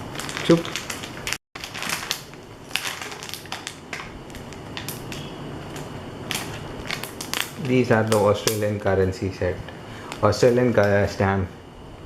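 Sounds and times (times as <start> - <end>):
paper rustling and crinkling: 0.0 - 8.6.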